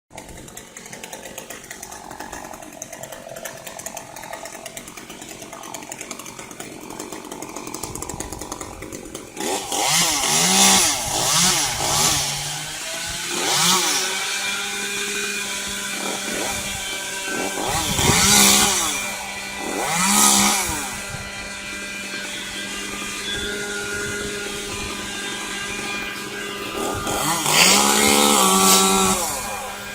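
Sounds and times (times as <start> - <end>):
chainsaw revving and idling: 0.1 - 29.9.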